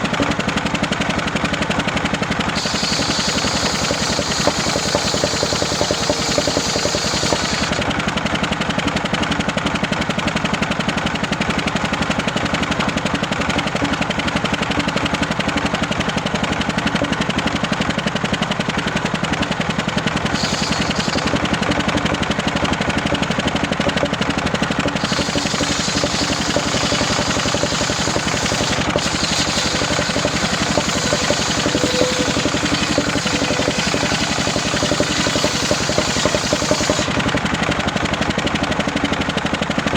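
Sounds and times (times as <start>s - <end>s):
circular saw engine running: 0.0s - 39.5s
saw blade cutting wood: 2.6s - 7.9s, 20.3s - 22.0s, 24.8s - 37.4s.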